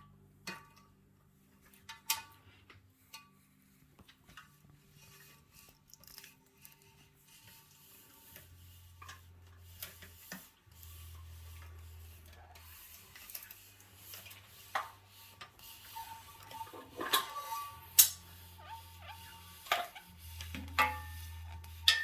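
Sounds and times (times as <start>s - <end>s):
steel cable rubbing through pulleys: 4.7s - 22.0s.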